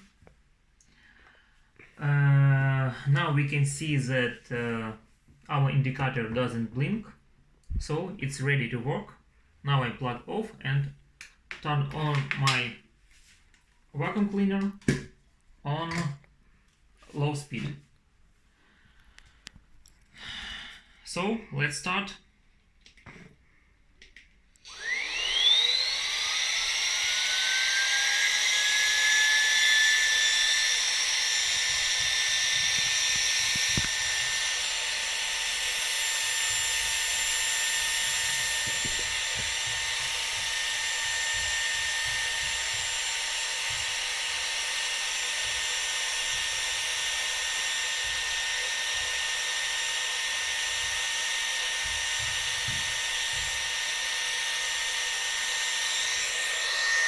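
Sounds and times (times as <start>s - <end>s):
vacuum cleaner motor whine: 24.6s - 57.0s.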